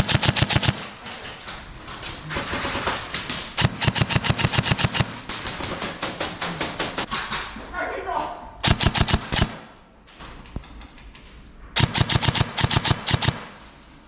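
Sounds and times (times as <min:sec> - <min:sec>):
airsoft guns firing full auto: 0:00.0 - 0:01.0, 0:02.4 - 0:07.0, 0:08.6 - 0:09.8, 0:11.8 - 0:13.6.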